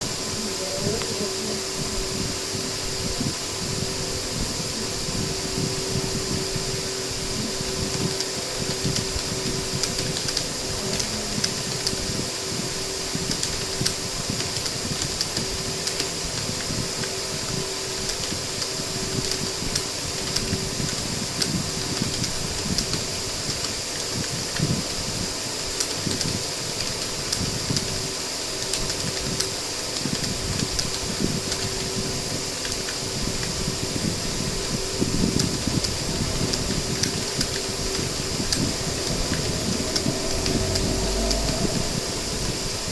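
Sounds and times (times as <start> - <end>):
fan whirring: 0.0 - 42.9.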